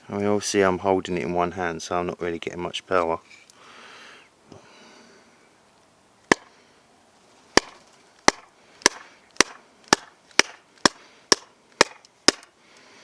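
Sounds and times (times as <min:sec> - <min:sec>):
axe chopping into log: 0:07.6 - 0:12.5.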